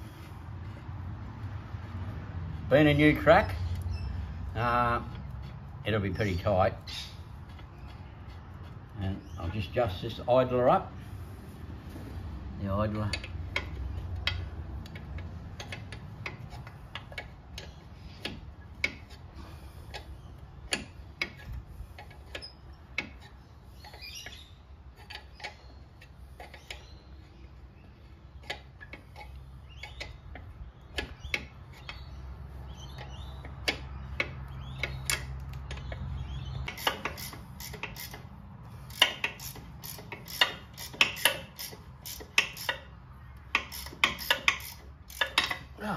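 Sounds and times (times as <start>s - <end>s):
sharp metallic clicks: 12.9s - 19.3s, 28.4s - 45.8s.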